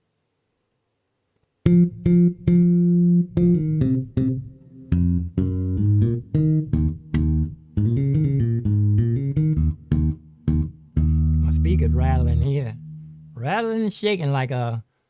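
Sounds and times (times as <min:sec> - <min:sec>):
plucked bass line: 0:01.6 - 0:13.6.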